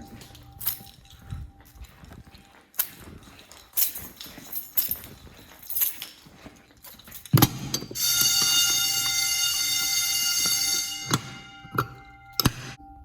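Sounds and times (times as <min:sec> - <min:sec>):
fire alarm ringing: 0:00.0 - 0:03.5, 0:07.8 - 0:13.0.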